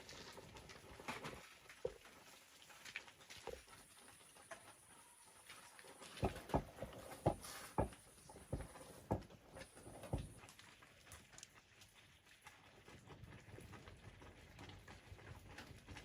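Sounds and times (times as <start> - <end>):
dull knocks: 6.2 - 10.4.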